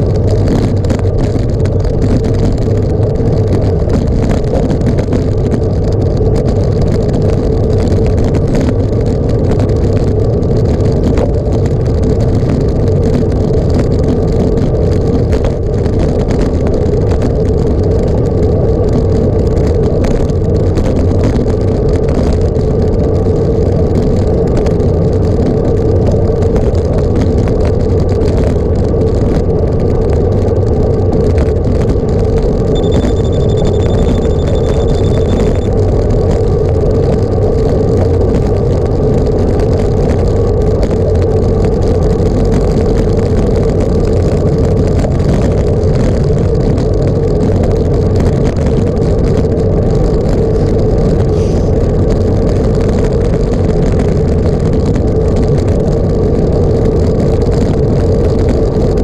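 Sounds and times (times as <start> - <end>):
droning hum: 0.0 - 59.0
vehicle rumble: 0.0 - 59.0
faint high tone: 32.7 - 35.7.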